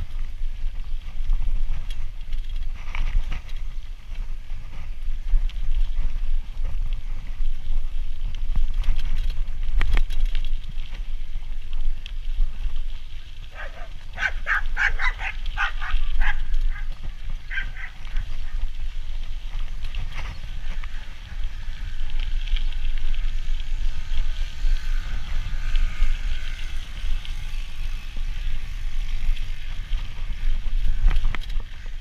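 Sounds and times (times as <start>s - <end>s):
dog barking: 13.5s - 16.9s, 17.5s - 18.0s.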